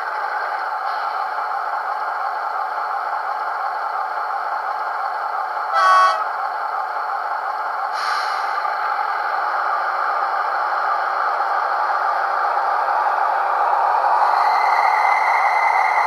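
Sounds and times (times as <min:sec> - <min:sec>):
diesel locomotive engine running: 0:00.0 - 0:16.0
short horn toot: 0:05.8 - 0:06.3
hiss: 0:07.9 - 0:09.4.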